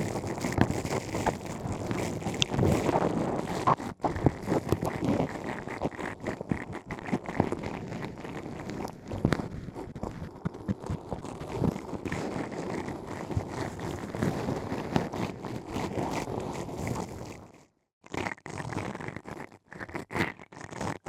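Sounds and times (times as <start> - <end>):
ear cleaning scratching and crackling: 0.0 - 17.4.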